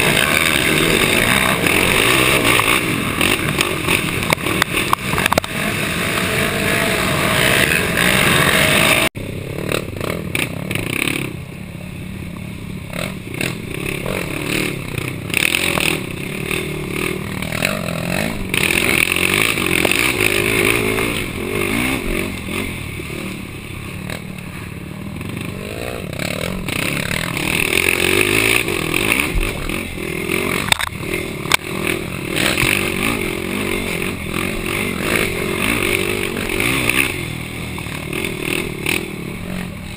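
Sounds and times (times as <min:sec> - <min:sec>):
clatter from rough ground: 0:00.0 - 0:06.5, 0:13.0 - 0:22.7, 0:25.1 - 0:39.9
quad engine revving: 0:00.0 - 0:11.5, 0:12.8 - 0:39.9.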